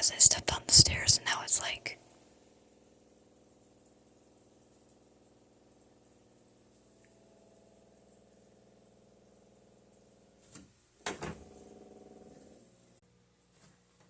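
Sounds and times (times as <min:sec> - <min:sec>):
faint wavering hum: 0:00.0 - 0:10.3.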